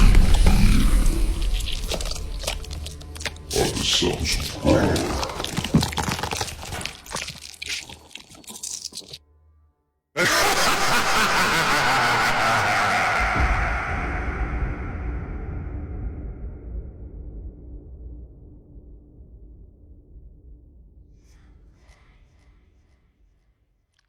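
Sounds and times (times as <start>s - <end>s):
low rumbling horror sound effect: 0.0s - 7.2s, 12.3s - 22.4s
wet crackling and squelching: 0.0s - 9.2s.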